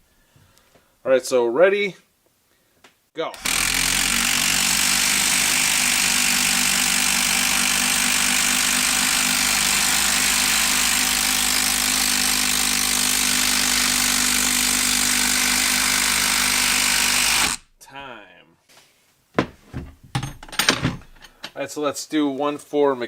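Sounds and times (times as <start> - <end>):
impact driver driving screw into wood: 3.3 - 17.7.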